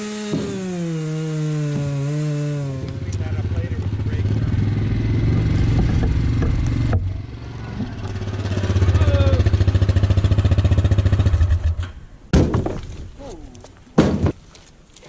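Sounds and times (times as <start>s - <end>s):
chainsaw running at high revs: 0.0s - 7.0s.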